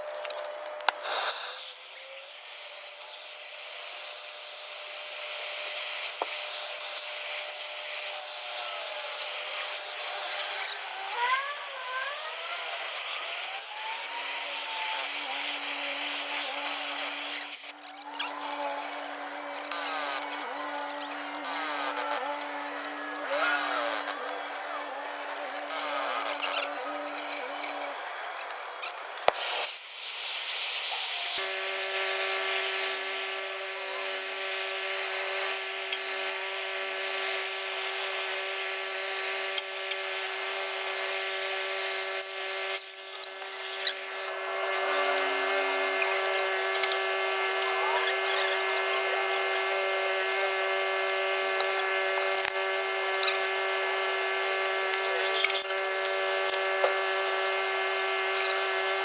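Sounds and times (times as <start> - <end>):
motor whining: 0.0 - 59.0
hiss: 1.0 - 2.0.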